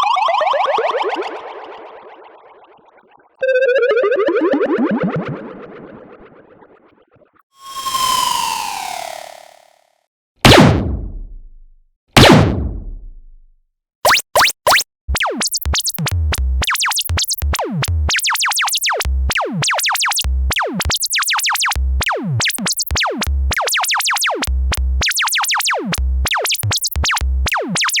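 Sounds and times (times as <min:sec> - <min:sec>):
cartoon falling pitch sweeps: 0:00.0 - 0:06.7, 0:07.6 - 0:09.6
drum-machine thump: 0:10.4 - 0:13.5.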